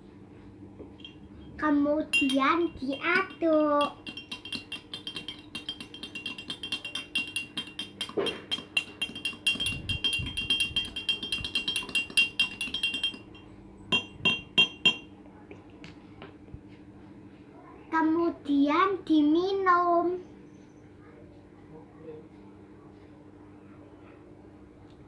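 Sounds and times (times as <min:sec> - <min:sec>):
spoon clinking in a glass: 0:00.9 - 0:15.1
spoon tapping glass: 0:00.9 - 0:15.1.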